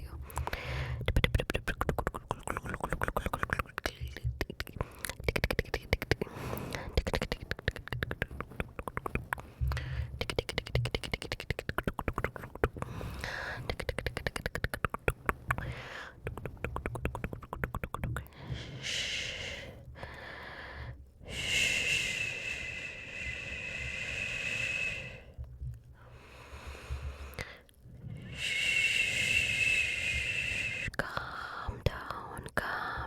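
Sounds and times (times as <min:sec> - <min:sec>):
wet mouth and tongue clicks: 0:00.1 - 0:18.4
short breathy sounds: 0:18.2 - 0:25.4, 0:26.0 - 0:31.7.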